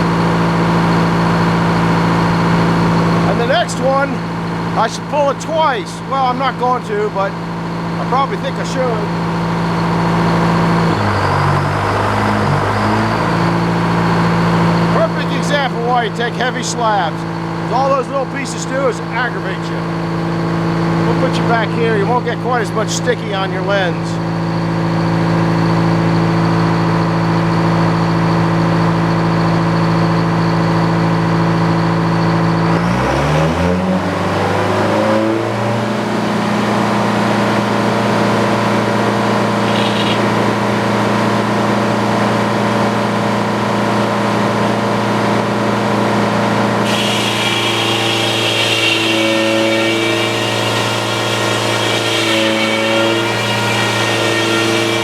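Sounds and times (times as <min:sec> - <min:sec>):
sawmill engine running: 0:00.0 - 0:55.0
saw blade cutting log: 0:39.4 - 0:40.9, 0:46.8 - 0:55.0.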